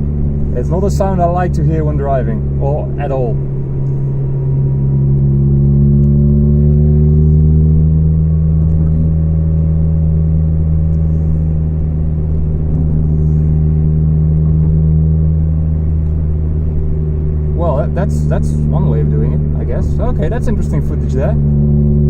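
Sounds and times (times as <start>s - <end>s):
car engine with broken exhaust: 0.0s - 22.0s.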